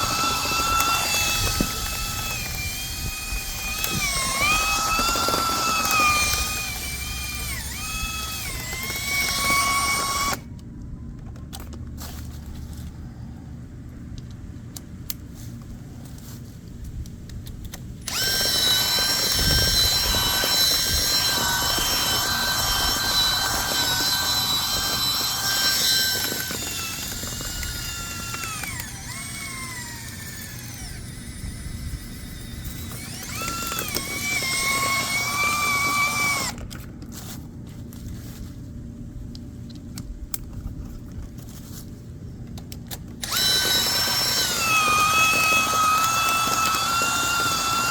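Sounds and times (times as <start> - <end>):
power drill spinning brush: 0.0 - 10.5, 18.1 - 37.4, 43.2 - 47.9.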